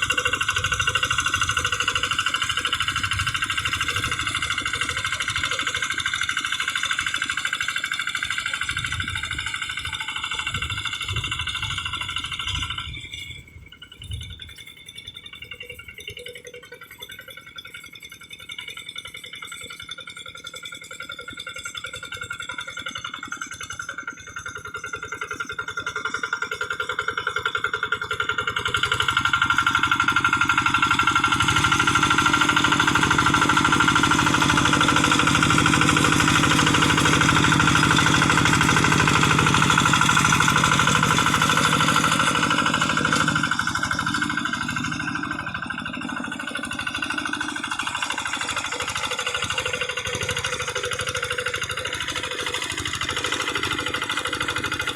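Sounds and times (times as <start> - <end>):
diesel engine running: 0.0 - 16.2, 21.7 - 54.9.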